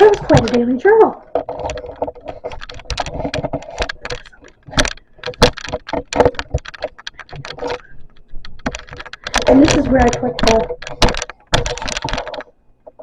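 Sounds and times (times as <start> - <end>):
hard plastic pieces clicking: 0.0 - 13.0.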